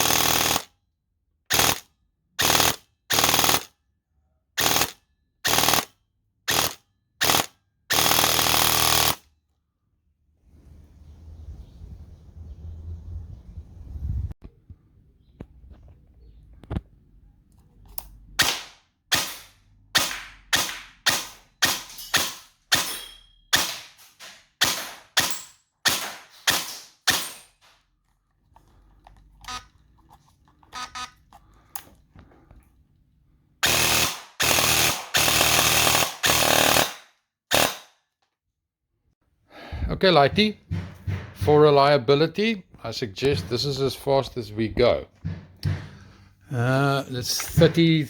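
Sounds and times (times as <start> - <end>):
airsoft gun full-auto bursts: 0.0 - 0.7, 1.5 - 3.7, 4.6 - 9.2, 33.6 - 38.0.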